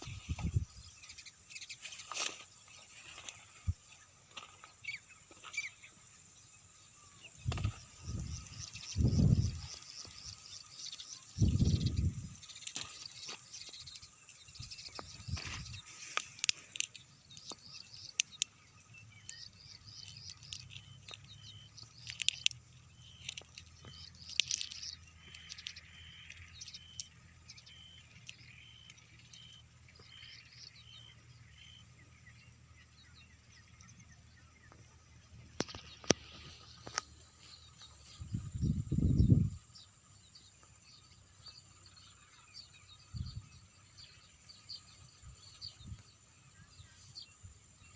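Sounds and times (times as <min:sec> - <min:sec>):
crackling clicks: 0:12.4 - 0:30.2, 0:34.7 - 0:37.2.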